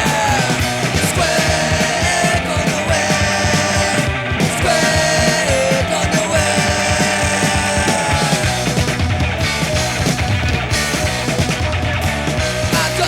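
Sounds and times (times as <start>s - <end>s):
vocals: 0.0s - 10.2s, 12.3s - 13.0s
distorted guitar: 0.0s - 13.0s
loud driving drums: 0.0s - 13.0s
punk rock music: 0.0s - 13.0s.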